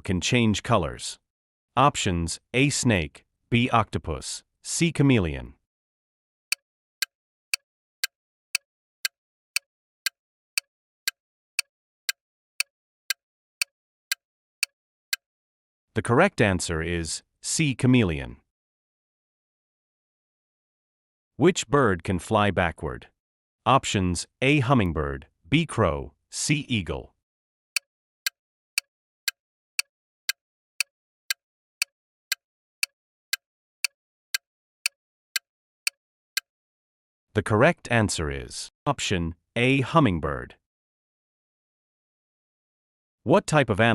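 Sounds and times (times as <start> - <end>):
countdown timer ticks: 30.3 - 31.9.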